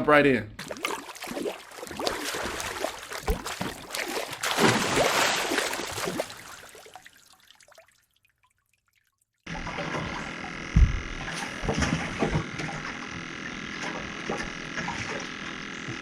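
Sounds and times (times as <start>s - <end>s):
outdoor ambience hum on water: 0.1s - 16.0s
water sounds: 0.6s - 15.6s
low thump: 10.7s - 11.9s.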